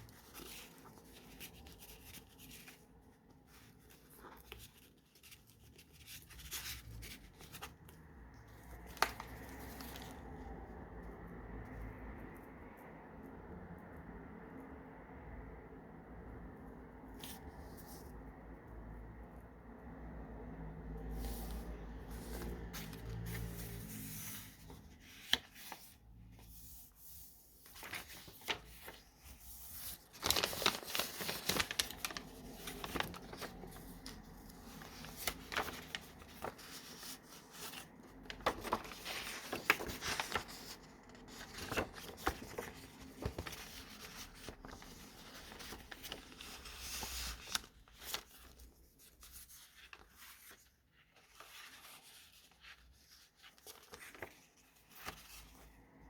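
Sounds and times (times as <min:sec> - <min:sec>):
paper pages rustling: 0:00.0 - 0:10.8, 0:17.2 - 0:18.2, 0:21.0 - 0:56.0
page flaps: 0:27.6 - 0:48.7.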